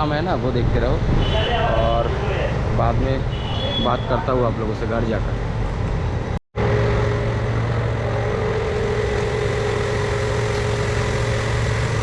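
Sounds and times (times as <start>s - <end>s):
motor humming: 6.6s - 12.0s.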